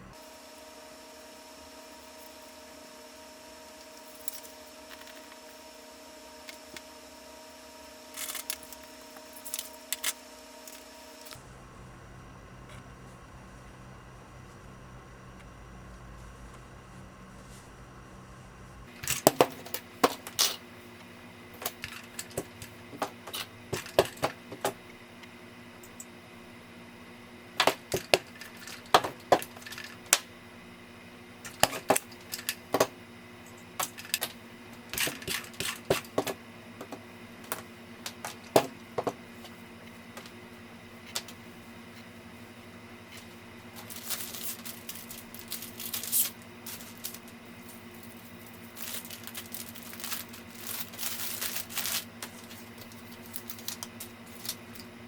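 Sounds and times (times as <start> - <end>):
faint steady hum: 0.0 - 55.0
rustling: 10.8 - 19.0, 43.2 - 54.8.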